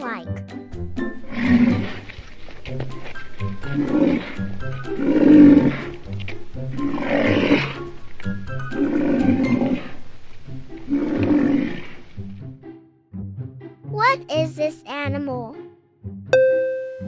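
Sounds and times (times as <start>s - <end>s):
light background music: 0.0s - 17.0s
rhinoceros calling: 0.7s - 12.3s.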